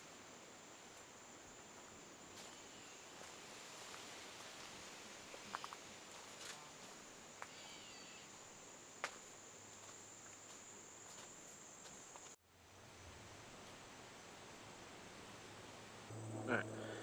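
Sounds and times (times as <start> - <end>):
high-pitched insect drone: 7.4 - 8.4.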